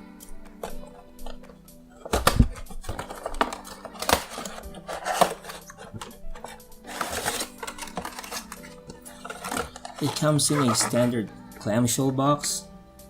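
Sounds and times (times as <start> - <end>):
soft background music: 0.0 - 13.0
cardboard box crackling: 2.0 - 11.2.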